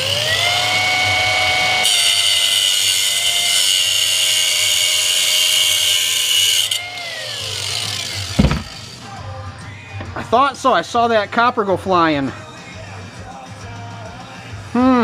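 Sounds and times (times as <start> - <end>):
power grinder whining: 0.0 - 9.1
grinder cutting metal: 0.0 - 9.2.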